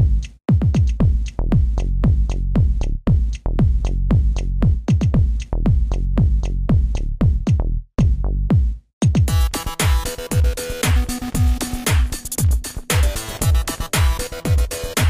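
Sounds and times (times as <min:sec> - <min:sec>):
electronic dance music: 0:09.3 - 0:15.0.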